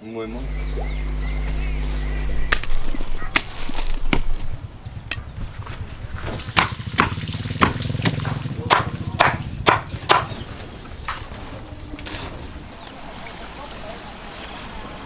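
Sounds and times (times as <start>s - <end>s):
low steady hum: 0.0s - 9.9s.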